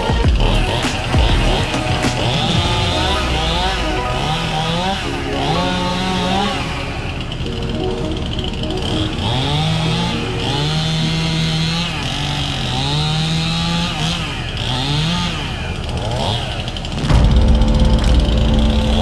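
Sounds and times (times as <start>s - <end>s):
chainsaw revving: 9.2s - 17.0s.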